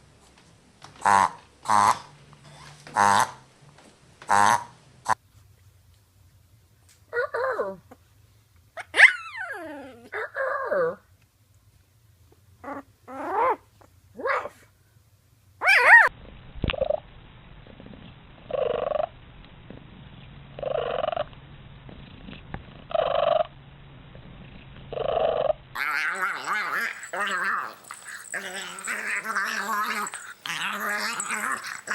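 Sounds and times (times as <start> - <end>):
rough breathy animal sound: 26.3 - 31.9.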